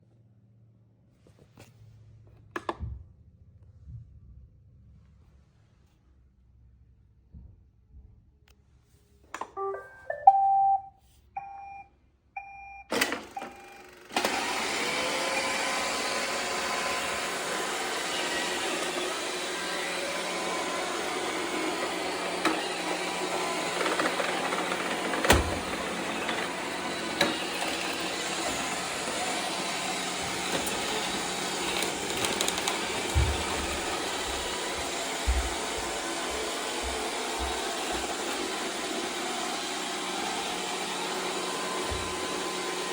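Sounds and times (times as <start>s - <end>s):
robot vacuum beep tune: 9.6s - 13.8s
vacuum motor and brushes running: 12.9s - 42.9s.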